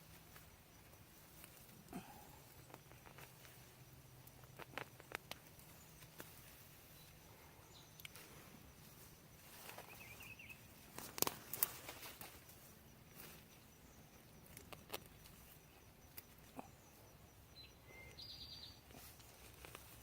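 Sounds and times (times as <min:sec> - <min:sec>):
bird chirping: 0:05.5 - 0:20.0
digging in garden soil: 0:18.0 - 0:20.0.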